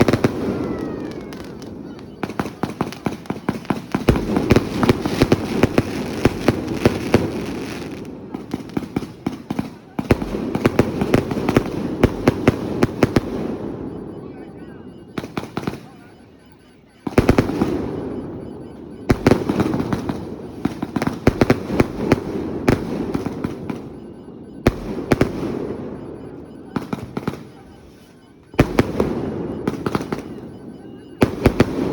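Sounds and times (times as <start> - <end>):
fireworks crackling: 0.0 - 13.5
fireworks bangs: 0.0 - 16.3, 17.0 - 31.9.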